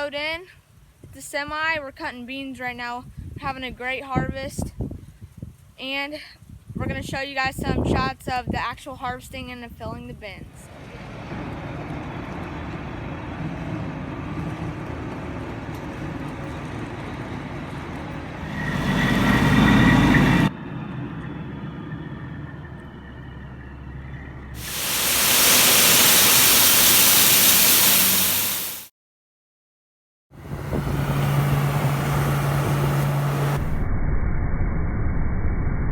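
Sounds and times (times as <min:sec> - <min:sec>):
heavy machinery engines running: 0:10.7 - 0:28.9, 0:30.4 - 0:33.8
rumble with a whine: 0:16.8 - 0:28.8, 0:30.4 - 0:35.9
loud even hiss: 0:24.6 - 0:28.9.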